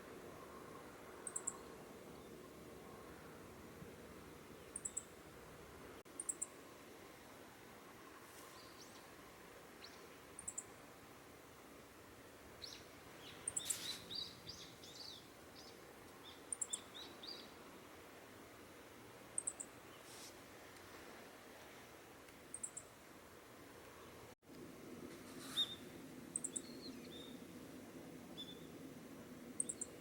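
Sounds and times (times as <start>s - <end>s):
faint lower bird chirps: 0.4s - 2.4s, 4.6s - 5.2s, 6.1s - 6.6s, 9.8s - 10.8s, 12.6s - 17.6s, 19.4s - 20.2s, 22.5s - 23.0s, 25.5s - 27.4s, 29.6s - 30.0s.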